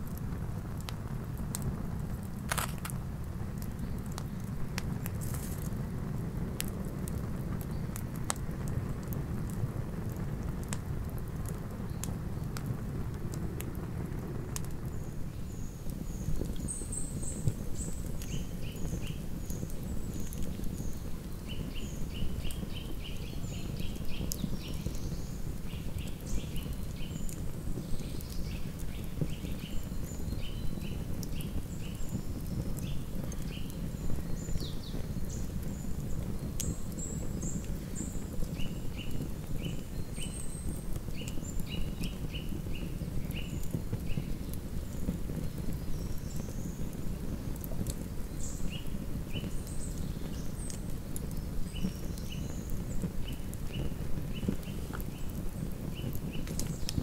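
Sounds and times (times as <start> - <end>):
campfire crackling: 0.0 - 57.0
low fire rumble: 0.0 - 57.0.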